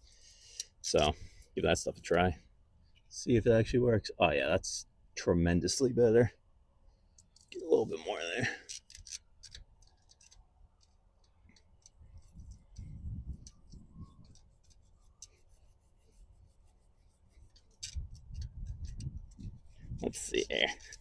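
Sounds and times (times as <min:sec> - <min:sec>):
wire brush scratching metal: 0:07.7 - 0:21.0.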